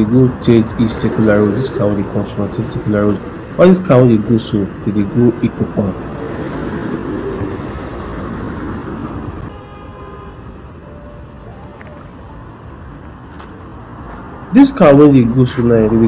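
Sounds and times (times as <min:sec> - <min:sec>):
vehicle passing close: 0:00.0 - 0:09.5
steady traffic hum: 0:00.0 - 0:16.0.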